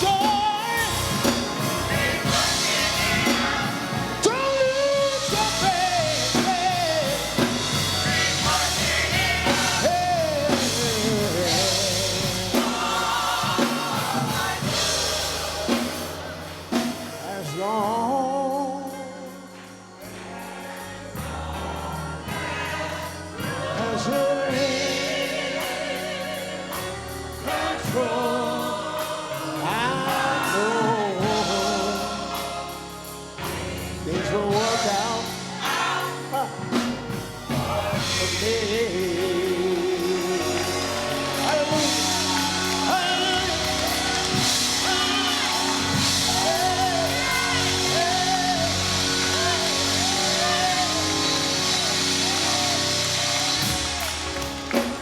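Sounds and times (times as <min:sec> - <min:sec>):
steady bass line: 0:00.0 - 0:17.4, 0:36.6 - 0:55.0
band accompaniment: 0:00.0 - 0:55.0
gospel choir singing: 0:00.0 - 0:55.0.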